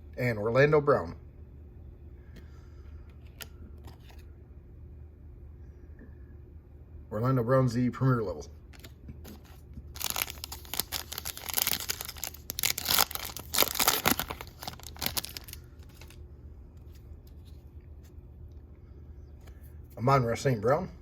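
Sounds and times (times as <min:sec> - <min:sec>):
faint card handling: 0:02.3 - 0:04.3, 0:08.7 - 0:18.2
wrapper tearing and crinkling: 0:08.7 - 0:16.2.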